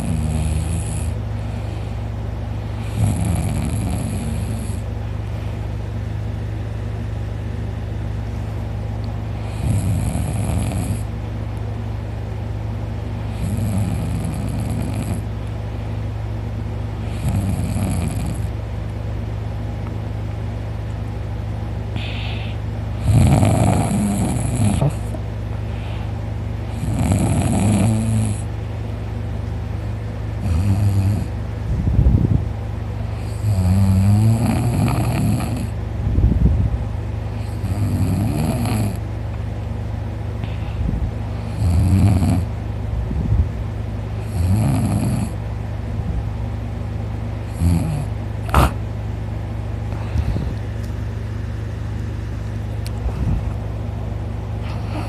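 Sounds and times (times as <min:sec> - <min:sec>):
man snoring loudly: 0:00.0 - 0:01.2, 0:02.8 - 0:04.9, 0:09.4 - 0:11.1, 0:13.3 - 0:15.2, 0:17.0 - 0:18.5, 0:23.0 - 0:25.2, 0:26.7 - 0:28.5, 0:30.4 - 0:31.4, 0:33.2 - 0:35.7, 0:37.4 - 0:39.0, 0:41.4 - 0:42.5, 0:44.2 - 0:45.4, 0:47.5 - 0:48.8
steady low hum: 0:00.0 - 0:55.0.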